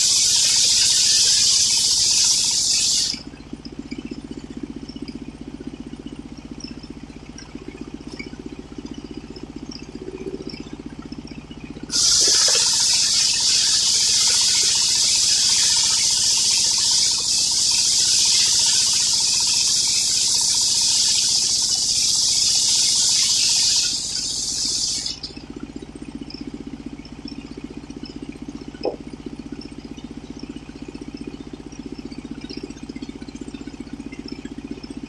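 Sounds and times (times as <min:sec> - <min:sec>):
circular saw cutting log: 0:00.0 - 0:03.2, 0:11.9 - 0:25.3
engine running: 0:00.0 - 0:35.0.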